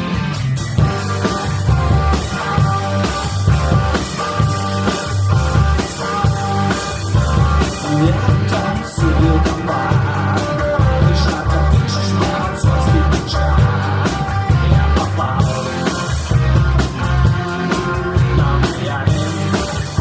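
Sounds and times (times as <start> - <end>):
rock band playing: 0.0 - 20.0.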